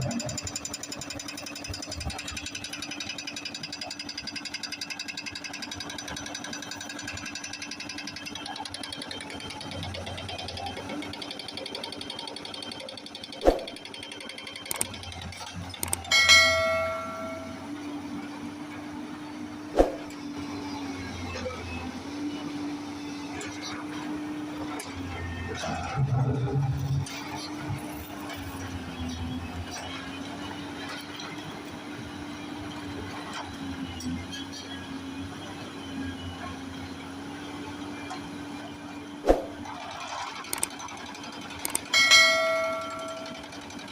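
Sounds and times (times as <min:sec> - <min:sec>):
heavy machine engine running: 0:00.0 - 0:43.9
ringing metal clang: 0:16.1 - 0:17.6, 0:41.9 - 0:43.8.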